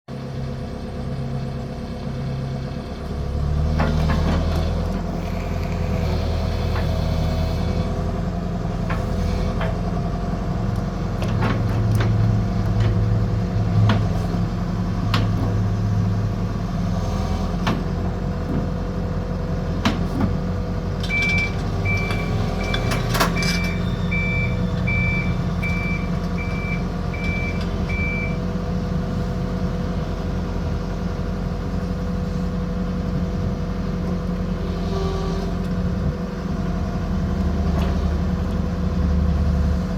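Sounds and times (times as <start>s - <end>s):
excavator diesel engine running: 0.1s - 39.9s
travel alarm beeping: 21.1s - 28.4s.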